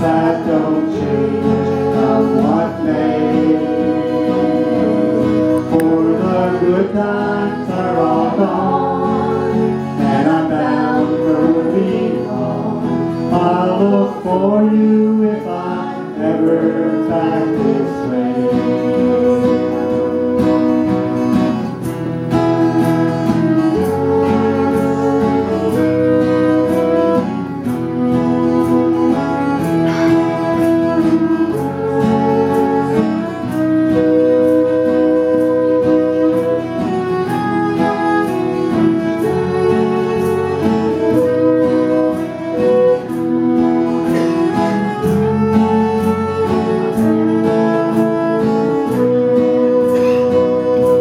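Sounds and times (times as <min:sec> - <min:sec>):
acoustic guitar strumming: 0:00.0 - 0:51.0
melody instrument holding notes: 0:16.5 - 0:51.0.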